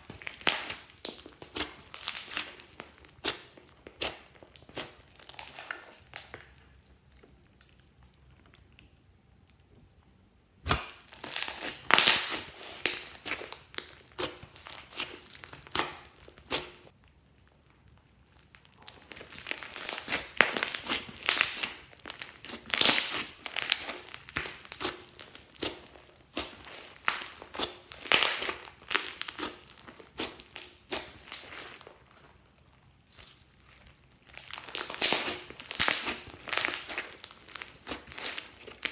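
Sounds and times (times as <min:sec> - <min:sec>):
slime squishing and crackling: 0:00.0 - 0:38.9.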